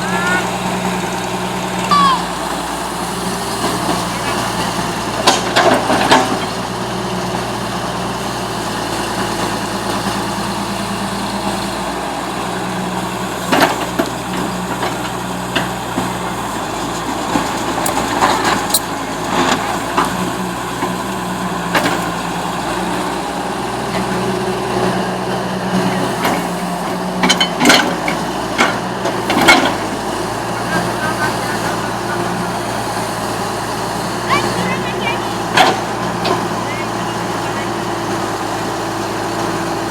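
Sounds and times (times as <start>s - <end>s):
diesel excavator engine running: 0.0s - 39.9s.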